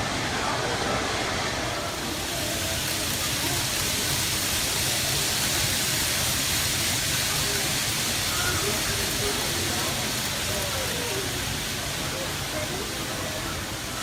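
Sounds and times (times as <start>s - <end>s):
faint voices: 0.0s - 14.0s
model trains running on track: 0.0s - 14.0s.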